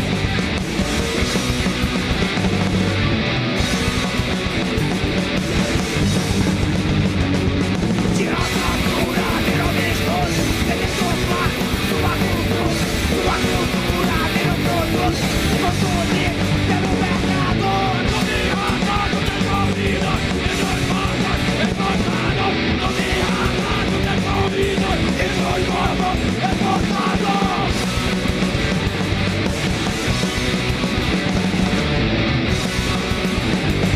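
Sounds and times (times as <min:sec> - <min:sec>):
bass guitar: 0:00.0 - 0:33.9
drums: 0:00.0 - 0:33.9
electric guitar: 0:00.0 - 0:33.9
punk rock band playing live: 0:00.0 - 0:33.9
shouted vocals: 0:08.1 - 0:27.8.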